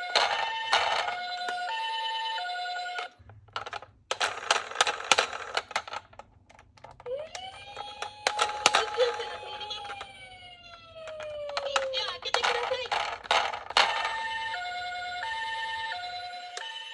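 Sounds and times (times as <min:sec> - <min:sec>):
clicks and rattles of toy cars: 0:00.0 - 0:01.8, 0:02.8 - 0:14.6
rising toy siren: 0:00.0 - 0:03.1, 0:07.0 - 0:12.8, 0:13.8 - 0:16.9
two-tone toy siren: 0:00.0 - 0:03.2, 0:07.0 - 0:13.2, 0:13.8 - 0:16.9.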